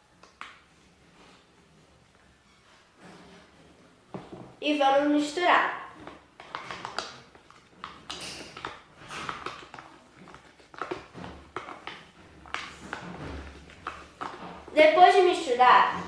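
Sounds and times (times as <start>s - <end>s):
sticky wet stirring: 5.5s - 16.0s.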